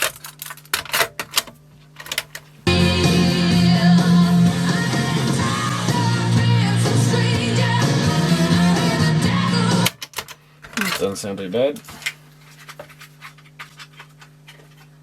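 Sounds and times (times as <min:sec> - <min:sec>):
rock song with singer: 0:02.7 - 0:10.0.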